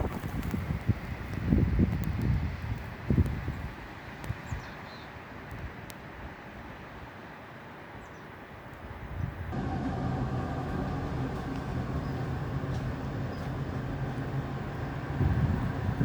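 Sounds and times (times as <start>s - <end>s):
rough wind-like noise: 0.0s - 4.6s, 9.0s - 16.0s
motor vehicle engine hum: 9.5s - 16.0s.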